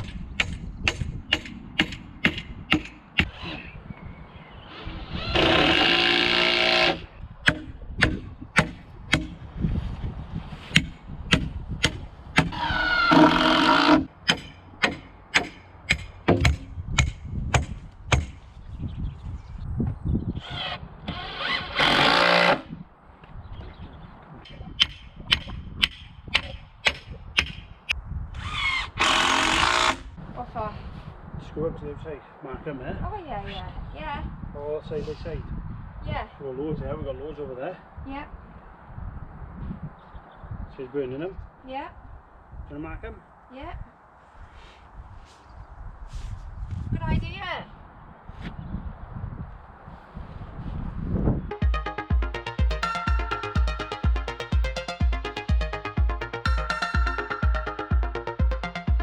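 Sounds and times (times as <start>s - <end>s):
sharp knocks: 0.0s - 3.3s, 7.5s - 9.4s, 10.7s - 12.6s, 14.0s - 18.4s
power drill driving screws: 4.7s - 7.0s, 20.4s - 22.6s, 28.4s - 30.0s.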